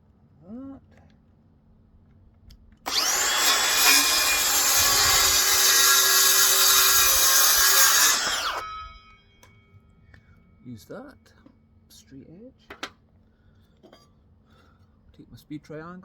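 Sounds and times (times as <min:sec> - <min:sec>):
circular saw cutting wood: 0:02.9 - 0:09.2.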